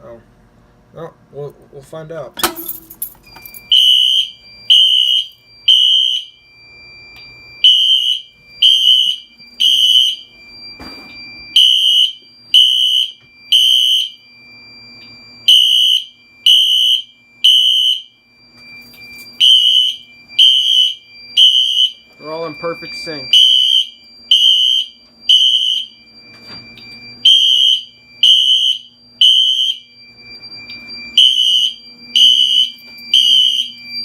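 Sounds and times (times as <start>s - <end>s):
fire alarm horns blasting: 2.5s - 34.0s
thin steady high tone: 18.1s - 34.0s.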